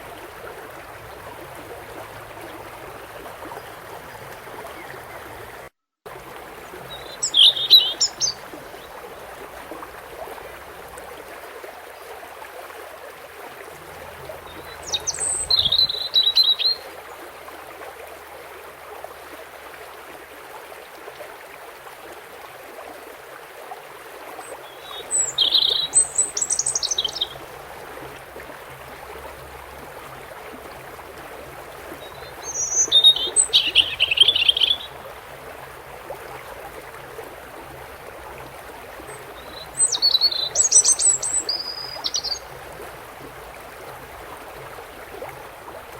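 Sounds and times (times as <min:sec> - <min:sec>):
stream flowing: 0:00.0 - 0:45.9
bird twittering: 0:06.9 - 0:08.5, 0:14.5 - 0:16.9, 0:24.8 - 0:27.4, 0:32.0 - 0:35.0, 0:39.1 - 0:42.6.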